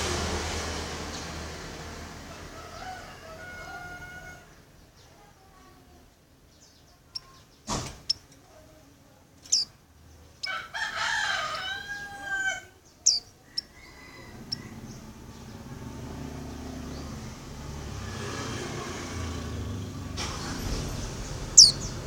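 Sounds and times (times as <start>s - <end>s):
rooster crowing: 2.3s - 4.6s, 10.4s - 12.8s, 13.5s - 15.3s
bird high sharp chirps: 9.4s - 9.8s, 12.9s - 13.8s, 21.5s - 22.0s
low rumble: 20.0s - 22.0s.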